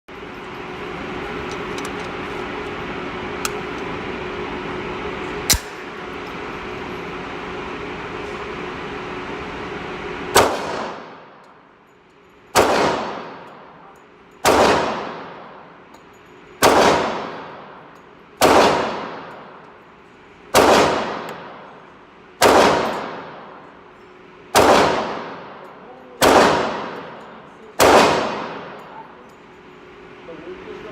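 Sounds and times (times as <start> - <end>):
pistol shots echoing: 5.5 - 5.9, 10.3 - 11.2, 12.6 - 13.5, 14.4 - 15.6, 16.6 - 17.8, 18.4 - 19.4, 20.5 - 21.7, 22.4 - 23.6, 24.5 - 25.6, 26.2 - 27.2, 27.8 - 28.8.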